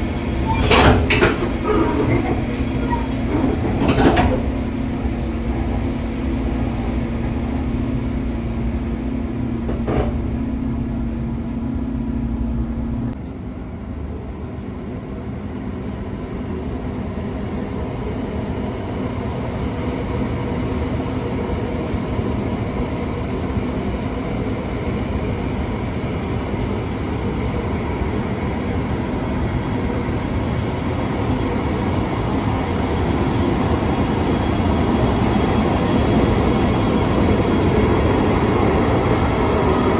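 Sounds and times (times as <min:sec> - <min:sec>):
train pulling away: 0:00.0 - 0:39.9
steady low hum: 0:03.6 - 0:13.2.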